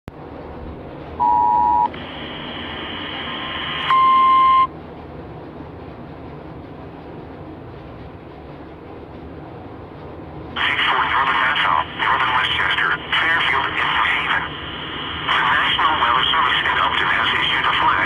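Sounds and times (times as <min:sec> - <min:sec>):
radio hiss: 0:01.9 - 0:04.4, 0:10.6 - 0:18.0.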